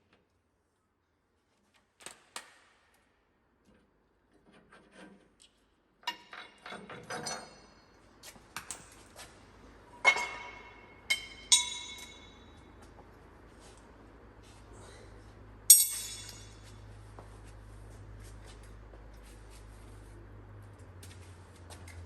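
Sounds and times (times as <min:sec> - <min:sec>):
hand tools clinking on steel: 0:10.1 - 0:12.7, 0:15.7 - 0:16.8.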